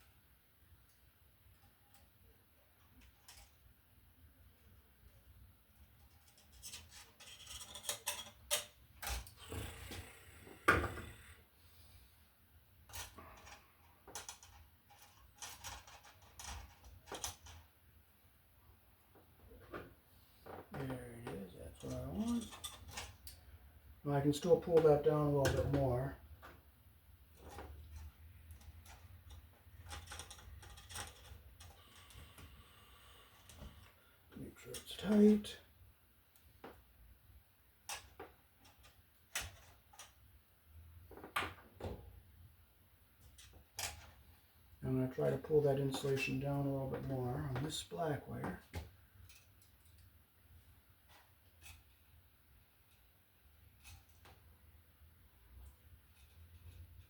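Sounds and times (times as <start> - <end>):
hand tools clicking and scraping: 20.8 - 23.4.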